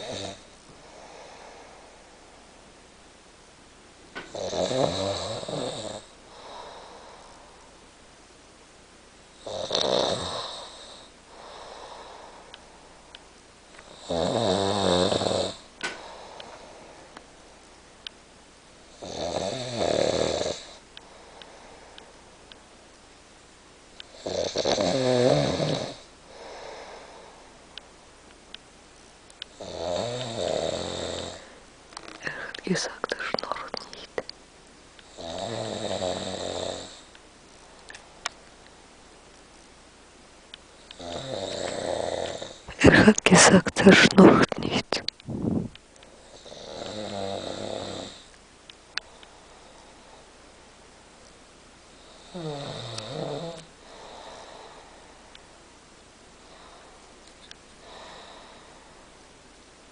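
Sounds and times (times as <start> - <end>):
man snoring: 0.0 - 1.4, 4.3 - 6.8, 9.4 - 12.1, 13.9 - 16.2, 18.9 - 20.8, 24.1 - 27.0, 29.5 - 31.6, 35.1 - 37.1, 40.9 - 43.0, 46.3 - 48.3, 52.0 - 54.8
quiet breath: 0.0 - 2.6, 5.9 - 7.9, 10.4 - 14.0, 15.6 - 17.6, 20.6 - 22.6, 26.0 - 27.9, 31.2 - 34.3, 48.2 - 50.8, 53.6 - 55.6, 56.3 - 59.2.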